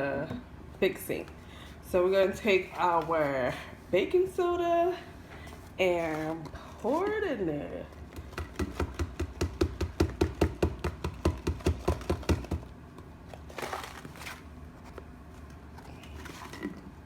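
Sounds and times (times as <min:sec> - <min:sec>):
box of powder knocking: 0:08.2 - 0:12.7.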